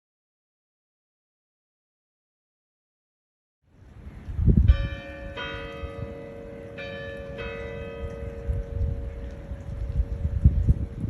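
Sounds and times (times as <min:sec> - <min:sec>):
wind buffeting microphone: 0:03.7 - 0:11.0
bells ringing: 0:04.7 - 0:11.0.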